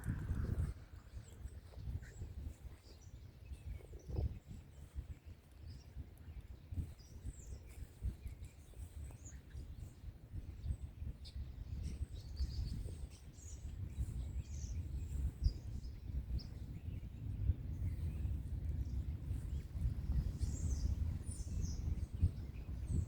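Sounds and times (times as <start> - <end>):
birds chirping: 18.8 - 23.0.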